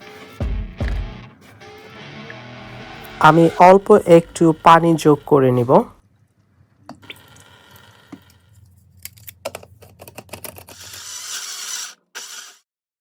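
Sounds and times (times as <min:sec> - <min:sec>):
blender motor grinding: 0:02.3 - 0:05.8, 0:07.0 - 0:08.6, 0:10.6 - 0:12.7.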